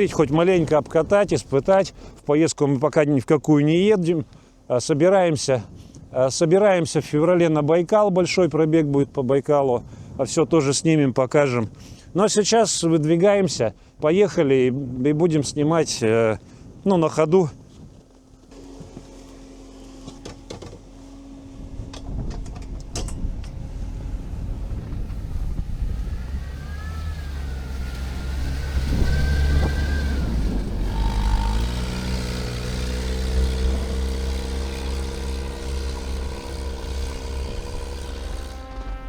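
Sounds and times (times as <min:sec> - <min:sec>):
vehicle engine rumbling under load: 0:00.0 - 0:02.8, 0:17.6 - 0:39.0
wavering whine: 0:21.0 - 0:39.0.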